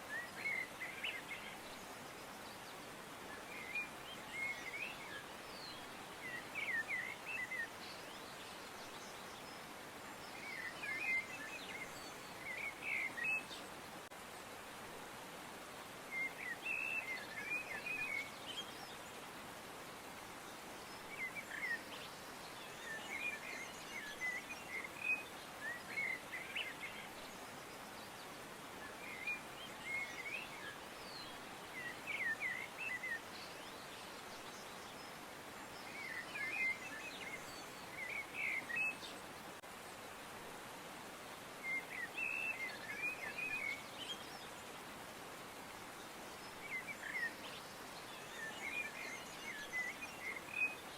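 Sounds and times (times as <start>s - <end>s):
steady outdoor hiss: 0.0s - 50.9s
small birds chirping: 41.4s - 44.8s.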